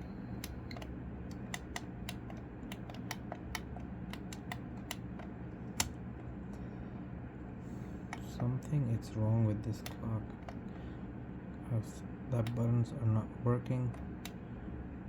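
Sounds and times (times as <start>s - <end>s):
small push buttons clicking: 0.4s - 6.0s, 9.7s - 10.6s, 12.4s - 12.7s.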